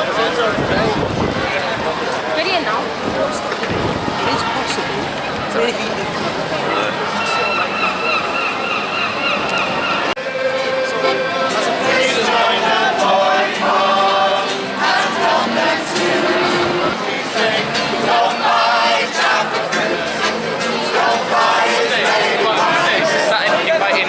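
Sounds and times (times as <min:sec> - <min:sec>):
choir singing with music: 0:10.2 - 0:24.0.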